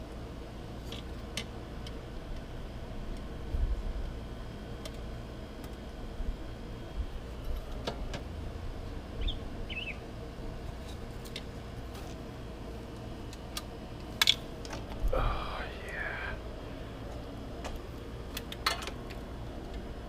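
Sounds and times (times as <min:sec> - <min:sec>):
small bird chirping: 0:09.2 - 0:10.0.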